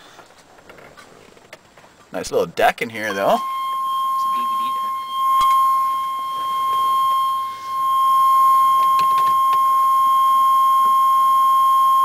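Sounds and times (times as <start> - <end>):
high-pitched electronic warning tone: 3.1 - 12.0.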